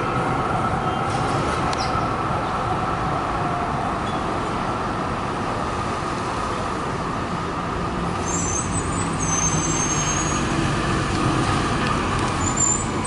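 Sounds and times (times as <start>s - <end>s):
street traffic: 0.0s - 13.0s
tram rumbling: 0.0s - 13.0s
high-pitched metallic squeal: 8.2s - 10.6s.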